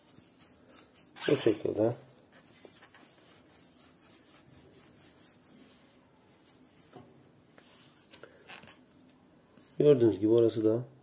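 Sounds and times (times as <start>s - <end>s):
wet wipe rubbing on bicycle: 0.0s - 7.0s.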